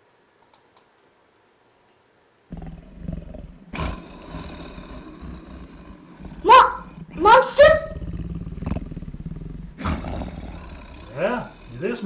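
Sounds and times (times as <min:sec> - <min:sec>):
monster growling breaths: 0:02.5 - 0:12.0.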